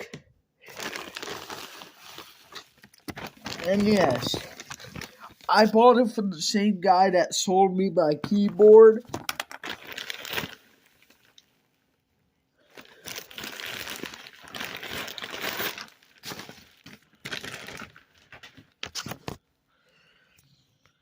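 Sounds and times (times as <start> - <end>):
plastic packaging crinkling: 0.6 - 5.7, 8.4 - 11.4, 12.7 - 19.4.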